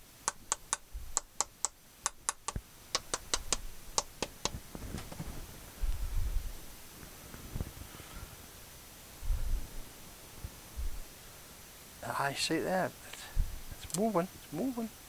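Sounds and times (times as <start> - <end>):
low bumps: 3.2 - 6.7, 9.2 - 11.1.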